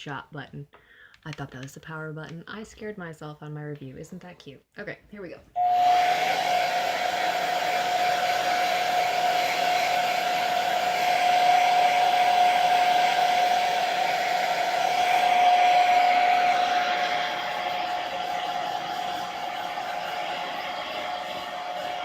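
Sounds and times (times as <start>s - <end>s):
hair dryer running: 5.6s - 22.0s.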